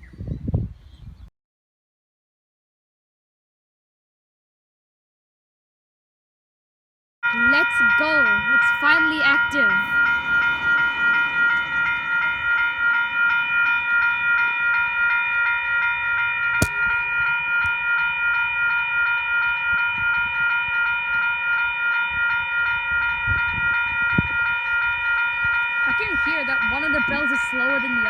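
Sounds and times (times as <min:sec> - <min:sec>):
level crossing bells ringing: 0:07.2 - 0:28.0.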